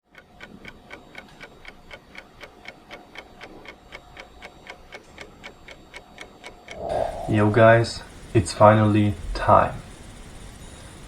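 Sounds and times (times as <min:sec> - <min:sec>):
faint steady tone: 0:06.7 - 0:08.9.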